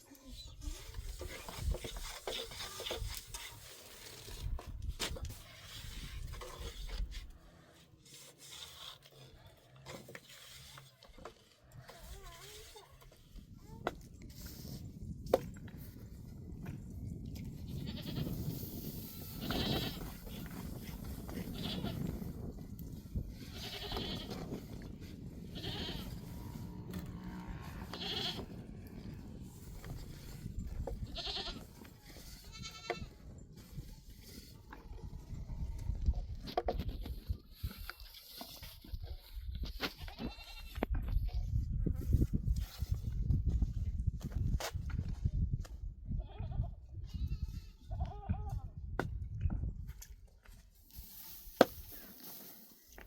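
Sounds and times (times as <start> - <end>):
rubbing and scraping: 0.4 - 16.2, 17.5 - 40.3, 50.9 - 53.0
goats bleating: 21.5 - 22.0, 23.5 - 24.3, 25.5 - 26.3, 27.7 - 28.5, 31.1 - 31.7.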